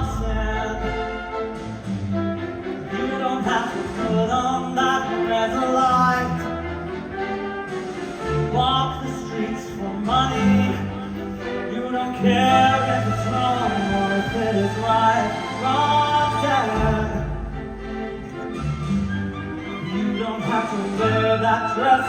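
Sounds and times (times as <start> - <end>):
bowed string ensemble playing: 0.0 - 22.0.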